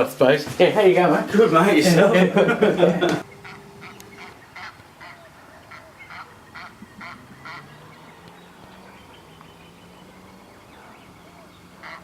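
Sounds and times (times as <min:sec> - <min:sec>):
bird honking calls: 0:03.2 - 0:12.0.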